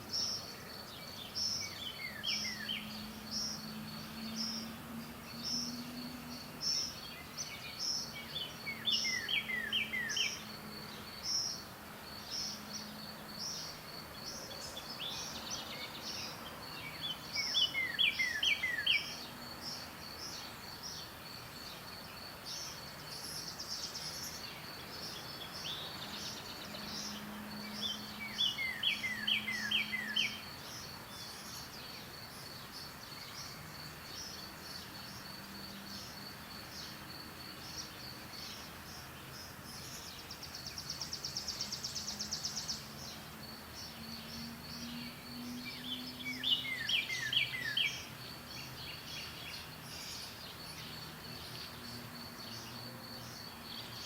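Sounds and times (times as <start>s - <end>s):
bird whistled song: 1.2s - 3.6s, 6.7s - 10.4s, 16.9s - 19.2s, 25.6s - 30.4s, 44.8s - 48.1s.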